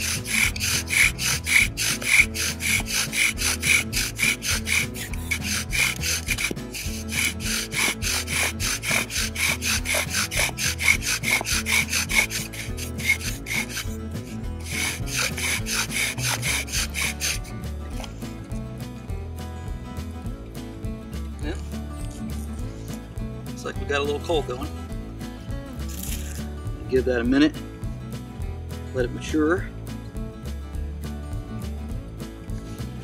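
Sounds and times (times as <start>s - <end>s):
bow drill spindle rasping on wood: 0.0s - 18.2s.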